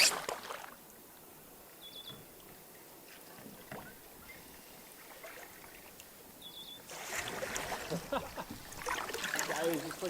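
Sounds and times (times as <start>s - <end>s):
paddle dipping in water: 2.2s - 10.0s.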